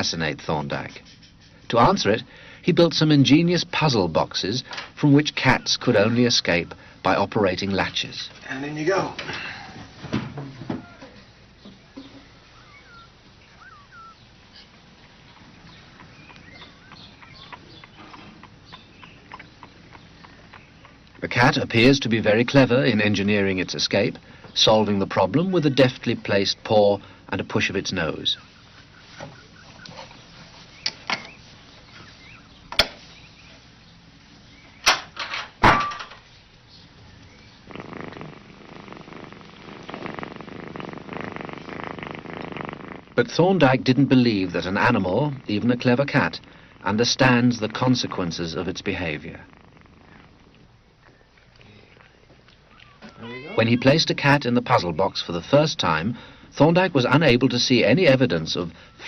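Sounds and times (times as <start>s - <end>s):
faint bird chirps: 10.8s - 21.2s, 28.2s - 34.9s, 36.3s - 38.2s, 51.0s - 52.0s, 52.6s - 54.0s
cat purring: 12.2s - 24.3s, 37.0s - 52.2s.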